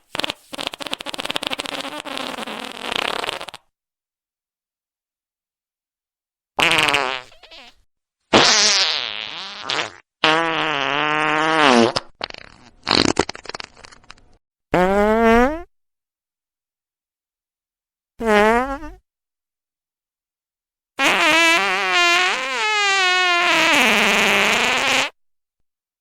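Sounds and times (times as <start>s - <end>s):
fart sounds: 0.0s - 3.7s, 6.6s - 15.7s, 18.2s - 19.0s, 21.0s - 25.2s.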